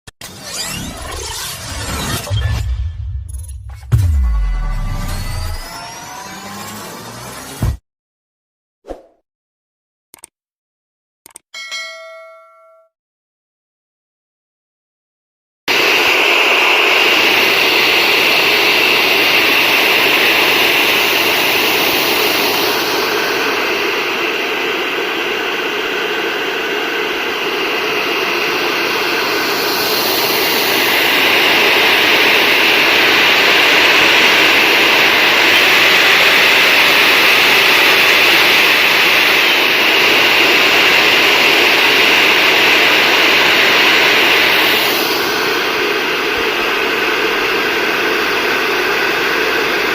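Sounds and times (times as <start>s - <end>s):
hair dryer blowing: 15.7s - 49.9s.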